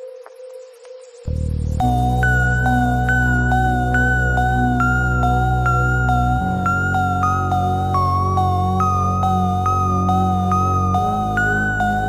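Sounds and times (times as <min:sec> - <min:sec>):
bass: 0:01.3 - 0:12.0
electronic music: 0:01.3 - 0:12.0
sustained synth tone: 0:01.3 - 0:12.0.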